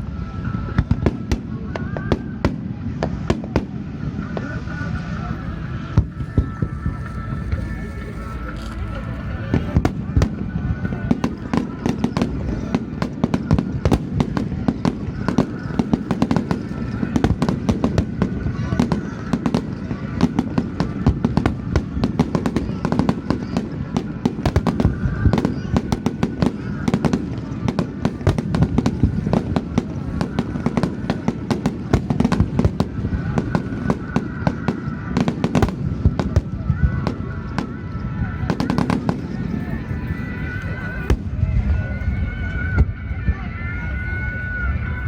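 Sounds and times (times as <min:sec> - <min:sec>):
firework bursts and crackles: 0:00.0 - 0:45.0.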